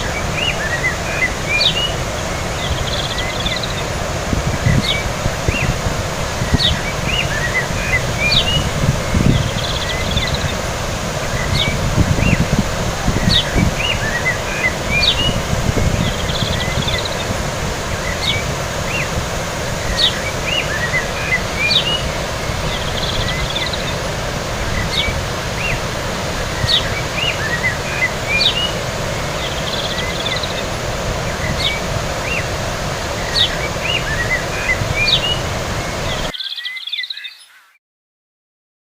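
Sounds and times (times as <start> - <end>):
wind on microphone: 0.0 - 36.3
bird chirping: 6.5 - 10.6, 11.3 - 17.3, 19.8 - 24.0, 26.5 - 30.7, 33.2 - 37.8.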